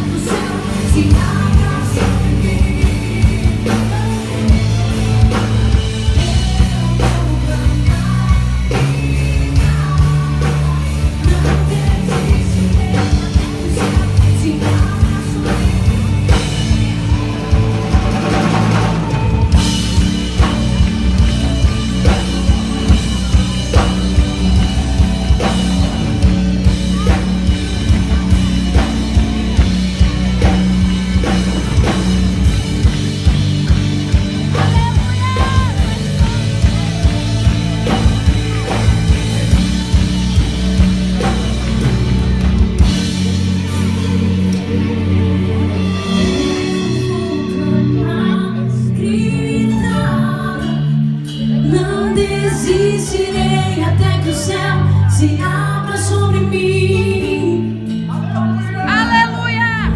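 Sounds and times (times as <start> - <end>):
drum kit steady beat: 0.0 - 47.6
keyboard chords: 0.0 - 59.9
sustained bass: 0.0 - 59.9.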